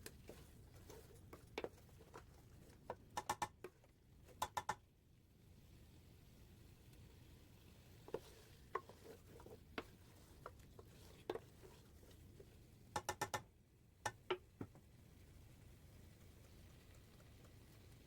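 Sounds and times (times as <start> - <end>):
light clicks and taps: 16.0 - 18.0.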